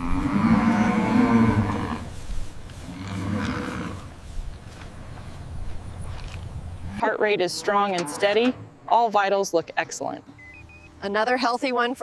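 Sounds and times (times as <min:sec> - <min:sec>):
cattle mooing: 0:00.0 - 0:02.1.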